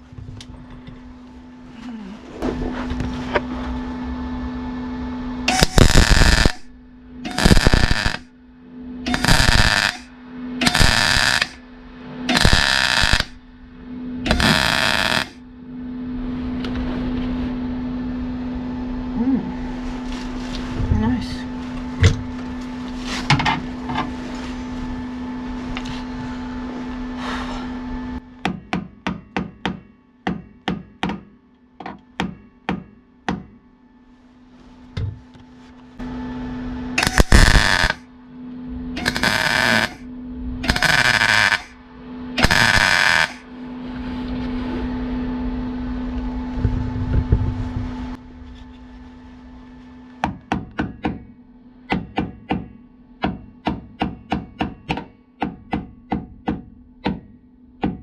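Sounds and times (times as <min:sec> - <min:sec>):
steady hum: 0:00.0 - 0:58.0
electric welding crackle: 0:05.4 - 0:08.4, 0:09.0 - 0:13.5, 0:14.2 - 0:15.4, 0:37.0 - 0:38.1, 0:39.0 - 0:41.8, 0:42.4 - 0:43.5.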